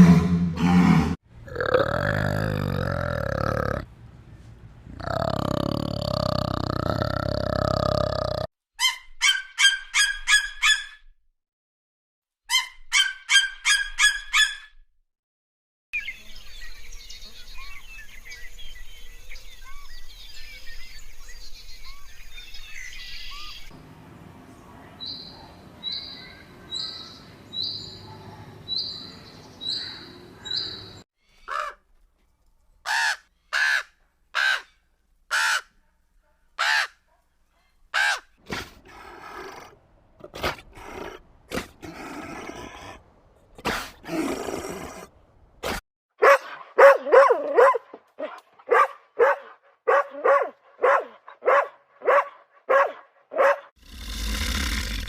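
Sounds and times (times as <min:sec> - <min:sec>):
harsh caw-like calls: 0:31.4 - 0:31.8, 0:32.9 - 0:35.7, 0:36.6 - 0:37.0, 0:38.0 - 0:38.3.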